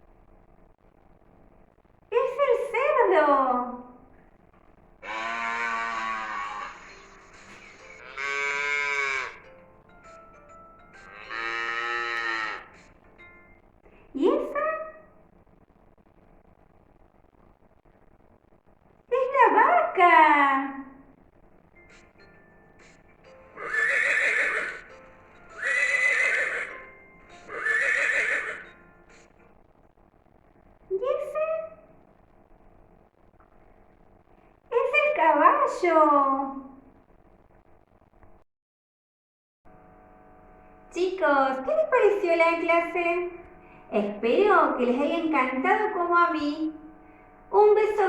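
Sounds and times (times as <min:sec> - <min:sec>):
cow mooing: 0:05.0 - 0:09.5, 0:11.0 - 0:12.9, 0:23.6 - 0:24.9, 0:25.6 - 0:26.8, 0:27.4 - 0:28.7
horse whinnying: 0:05.0 - 0:09.5, 0:23.6 - 0:24.9, 0:25.5 - 0:26.9, 0:27.5 - 0:28.8.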